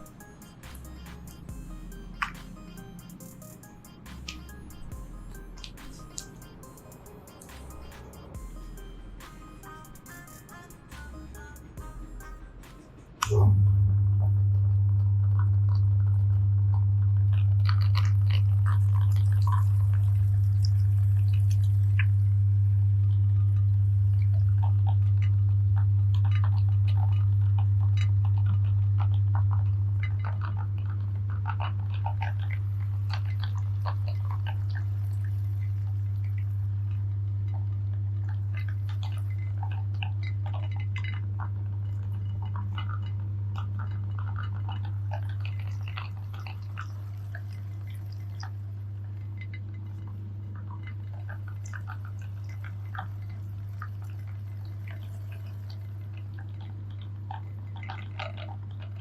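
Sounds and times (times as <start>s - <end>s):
chocolate crackling and crunching: 15.3s - 22.2s, 24.2s - 59.0s.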